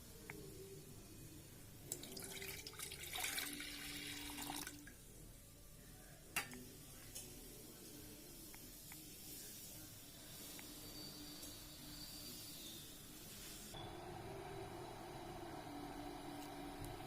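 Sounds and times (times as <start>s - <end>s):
water running into kettle: 1.9s - 4.8s.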